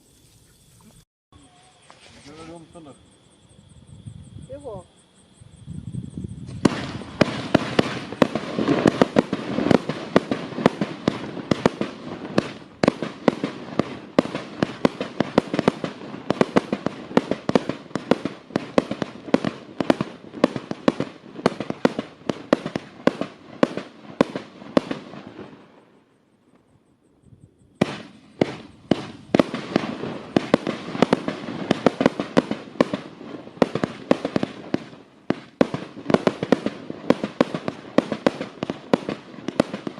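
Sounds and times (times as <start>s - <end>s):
firework barrage firing: 6.3s - 26.0s, 27.8s - 39.9s.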